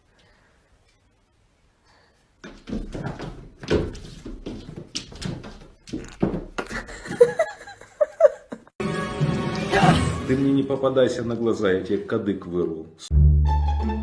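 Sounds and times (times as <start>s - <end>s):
irregular knocks and thumps: 2.4s - 7.4s.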